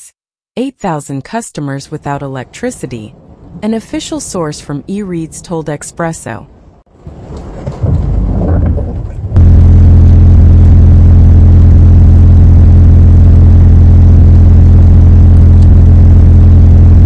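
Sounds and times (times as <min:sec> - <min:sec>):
low mechanical drone: 0:07.9 - 0:17.0.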